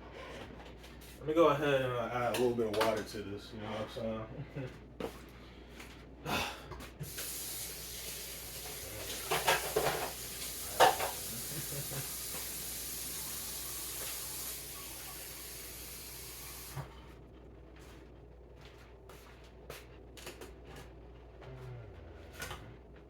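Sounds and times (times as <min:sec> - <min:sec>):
water sizzling in hot pan: 0:07.0 - 0:16.8.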